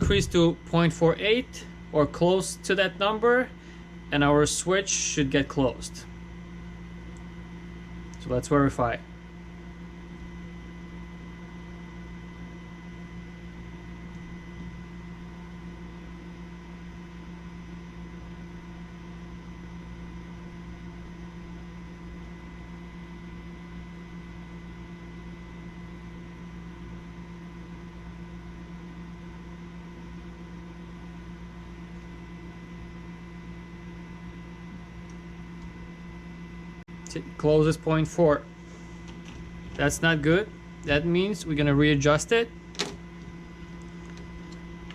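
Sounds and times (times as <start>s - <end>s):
small electric air pump humming: 0.0s - 44.9s.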